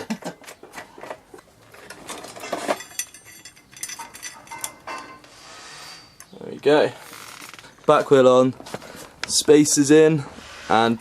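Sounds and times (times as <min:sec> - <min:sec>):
metal tools clinking: 0:01.0 - 0:06.3.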